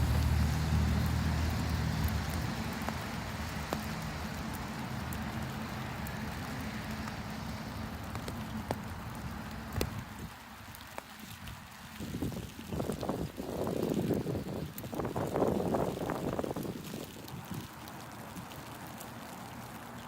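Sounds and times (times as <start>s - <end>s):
vehicle engine rumble passing: 0.0s - 10.0s.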